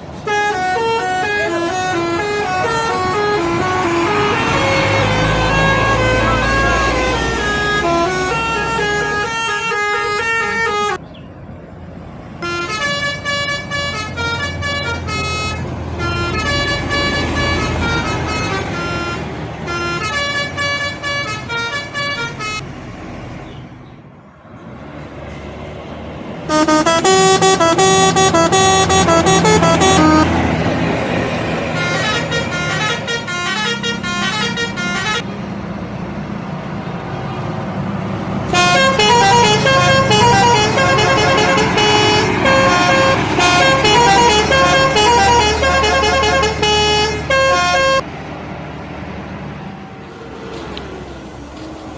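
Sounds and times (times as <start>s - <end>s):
bus engines running: 0.0s - 51.9s
musical air horns playing tunes: 0.1s - 11.0s, 12.4s - 22.6s, 26.5s - 30.6s, 31.6s - 35.2s, 38.5s - 48.0s.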